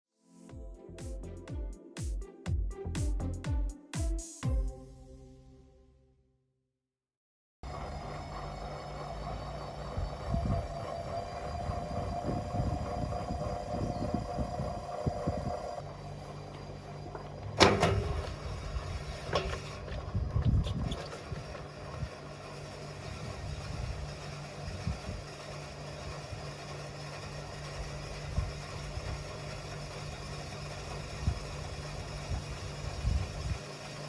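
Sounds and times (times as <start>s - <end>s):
washing machine hum: 7.7s - 34.0s.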